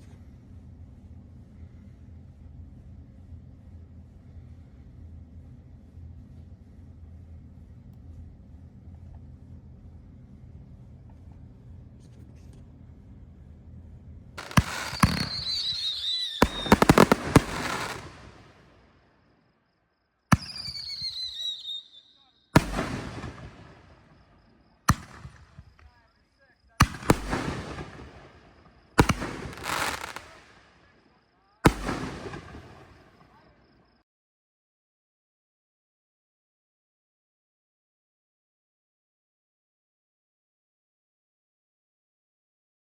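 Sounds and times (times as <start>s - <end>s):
long rumble: 0.0s - 14.4s
crackling over hiss: 14.4s - 18.7s, 24.9s - 30.9s
firework shell reports: 14.4s - 18.7s, 20.4s - 24.0s, 24.9s - 28.3s, 29.0s - 33.6s
high wavering whistle: 20.5s - 22.2s.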